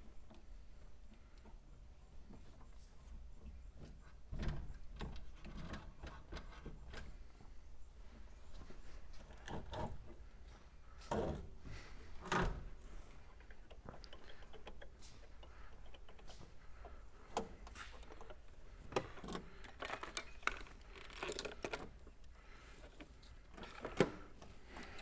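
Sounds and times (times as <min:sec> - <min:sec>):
tools and car parts clicking: 0:13.4 - 0:25.0.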